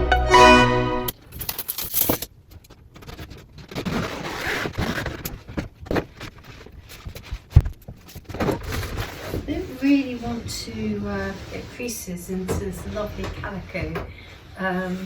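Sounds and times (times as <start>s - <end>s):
cloth rustling and scraping: 2.7s - 12.1s.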